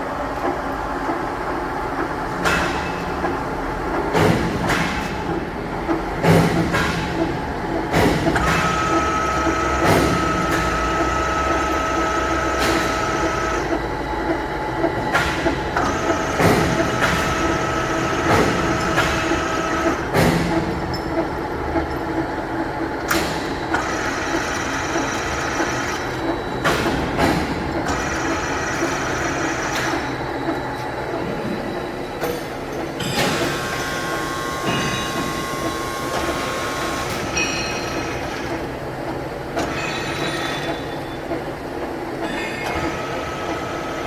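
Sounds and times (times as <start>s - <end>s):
lathe running: 8.4s - 20.0s.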